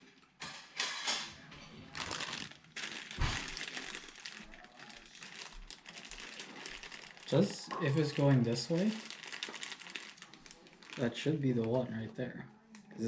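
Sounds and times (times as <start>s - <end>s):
packaging rustling: 1.9s - 11.8s.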